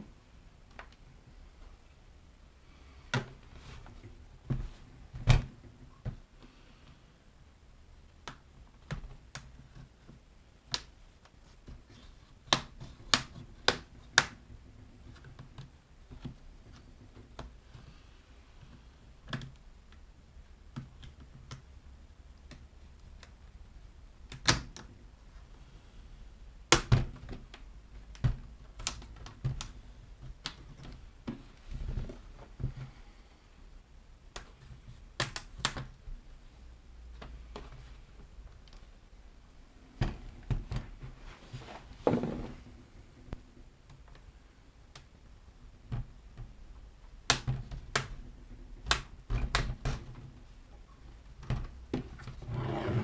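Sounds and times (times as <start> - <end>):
loud plastic snaps: 24.3 - 24.9, 26.7 - 31.0, 34.3 - 36.0, 47.2 - 50.1
plastic clips clicking and snapping: 26.7 - 29.8.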